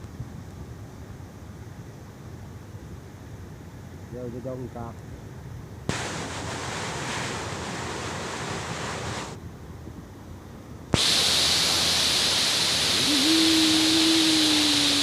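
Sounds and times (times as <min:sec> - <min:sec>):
waterfall rushing: 0:11.0 - 0:15.0.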